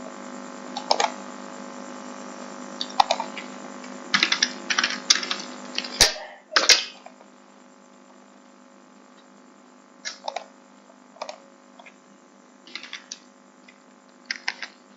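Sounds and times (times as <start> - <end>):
steady low hum: 0.0 - 14.9
computer keyboard typing: 4.1 - 5.9.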